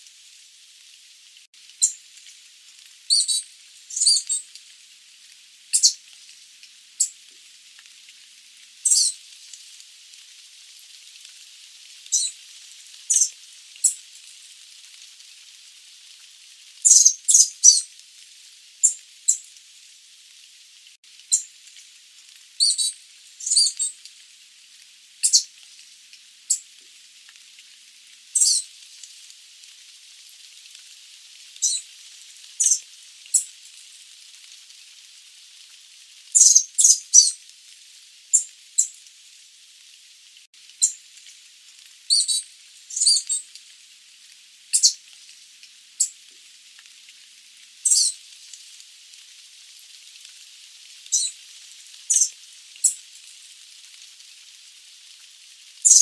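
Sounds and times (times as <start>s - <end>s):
faint hiss: 0.0s - 56.0s
bird chirping: 3.1s - 4.4s, 5.8s - 6.0s, 8.9s - 9.1s, 13.1s - 14.0s, 16.9s - 17.8s, 22.6s - 23.8s, 25.2s - 25.5s, 32.6s - 32.8s, 36.4s - 37.3s.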